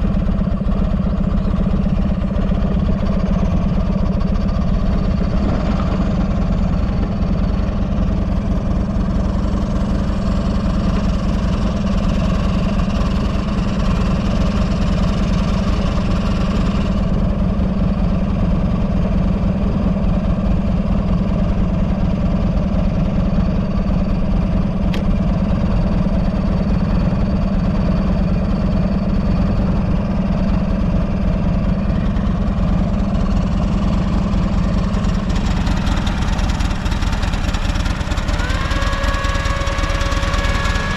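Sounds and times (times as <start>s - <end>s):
motorcycle engine idling: 0.0s - 40.9s.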